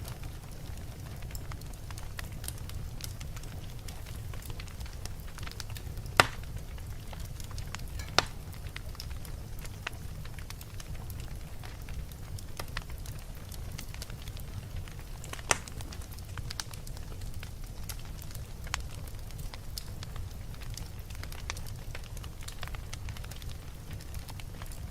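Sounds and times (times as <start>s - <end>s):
wood fire crackling: 0.0s - 24.9s
sharp pops of fire: 4.3s - 10.0s, 14.0s - 17.0s.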